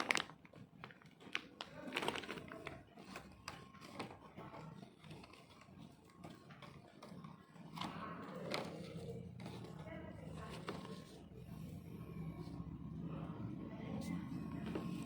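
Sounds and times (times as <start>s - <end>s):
packaging rustling: 0.0s - 5.8s.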